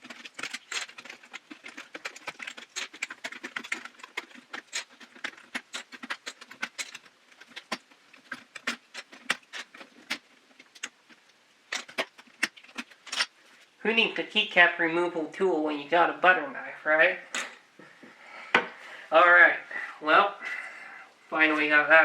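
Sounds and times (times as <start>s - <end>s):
plastic keycaps clicking and clattering: 0.0s - 13.4s.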